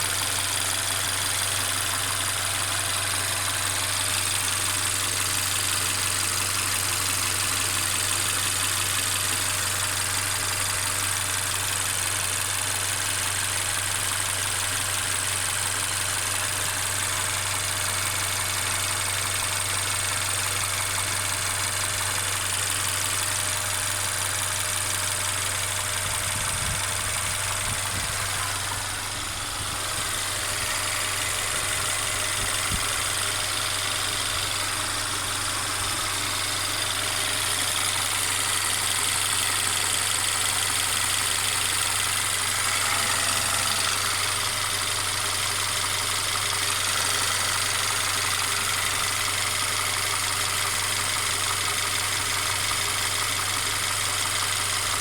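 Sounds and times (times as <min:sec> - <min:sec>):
car engine running: 0:00.0 - 0:55.0
continuous rattling: 0:23.0 - 0:40.4.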